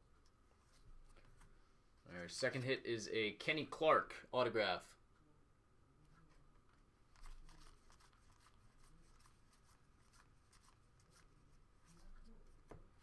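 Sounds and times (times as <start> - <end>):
trading cards rustling and clicking: 6.2 - 13.0.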